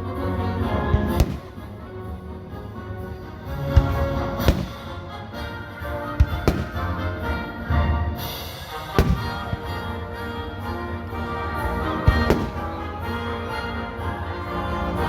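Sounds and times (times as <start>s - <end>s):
music playing: 0.0s - 15.0s
fireworks bursting: 1.0s - 1.8s, 3.7s - 5.2s, 6.2s - 7.4s, 8.2s - 10.1s, 12.0s - 13.3s.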